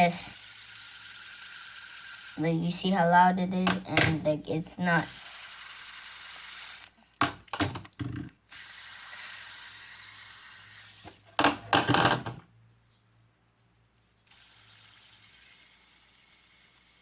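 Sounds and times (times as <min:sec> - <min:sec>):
fidget spinner clatter: 0:00.0 - 0:06.9, 0:14.3 - 0:17.0
fidget spinner whirring: 0:00.0 - 0:06.9, 0:07.8 - 0:12.4, 0:14.2 - 0:17.0.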